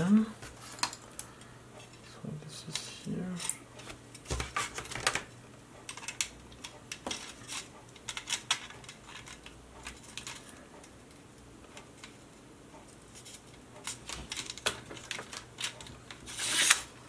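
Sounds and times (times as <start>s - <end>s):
small parts clicking and tapping: 5.8s - 12.2s.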